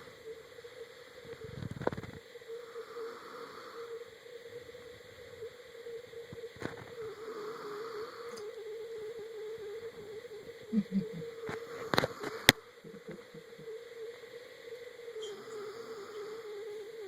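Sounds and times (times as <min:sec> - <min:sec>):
high-pitched hum: 0:00.0 - 0:17.0
child breathing with soft snores: 0:02.7 - 0:04.1, 0:07.0 - 0:08.5, 0:15.3 - 0:16.5.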